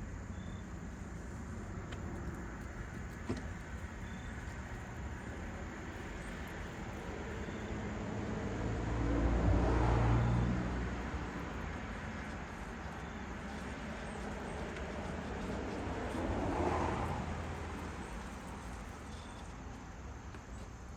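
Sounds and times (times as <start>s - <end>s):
outdoor background noise: 0.0s - 20.9s
vehicle engine passing: 7.5s - 12.7s, 14.0s - 19.0s.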